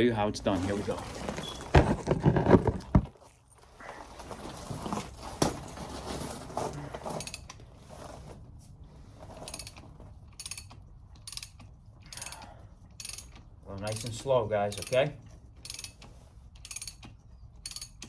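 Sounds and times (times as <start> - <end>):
ratcheting tool clicking: 9.5 - 9.8, 10.4 - 15.0, 15.6 - 18.0.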